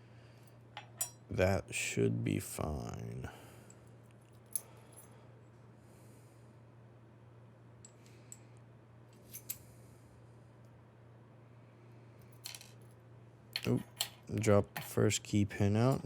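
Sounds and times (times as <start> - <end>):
faint steady hum: 0.0 - 16.0
metallic clicks of lock parts: 13.5 - 15.0.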